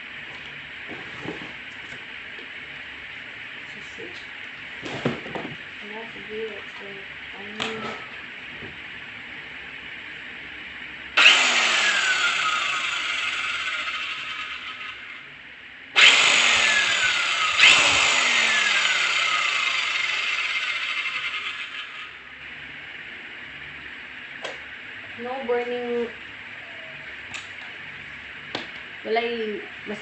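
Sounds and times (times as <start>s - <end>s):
circular saw spinning up: 11.2s - 15.3s, 16.0s - 22.3s.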